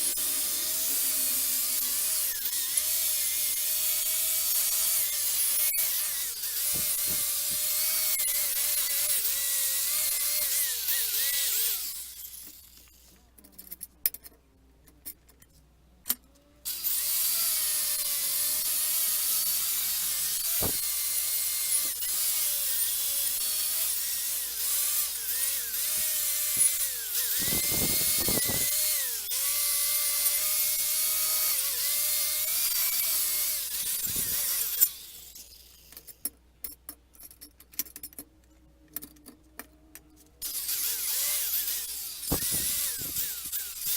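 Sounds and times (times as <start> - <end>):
power tool motor hissing: 0.0 - 12.5, 16.7 - 35.9, 40.4 - 43.9.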